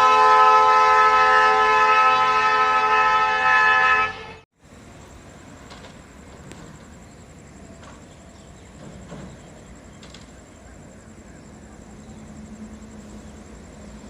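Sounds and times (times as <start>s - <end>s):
train horn: 0.0s - 4.5s.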